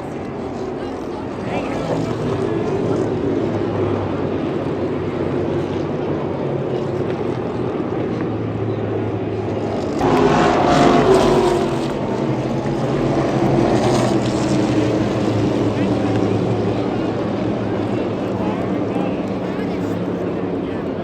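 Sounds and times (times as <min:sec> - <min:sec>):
race car engines droning: 0:00.0 - 0:21.0
race car passing close: 0:06.7 - 0:19.7.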